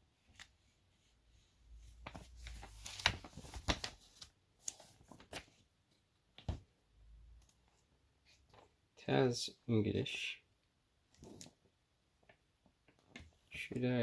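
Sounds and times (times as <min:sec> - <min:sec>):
paper pages rustling: 0:01.8 - 0:05.6.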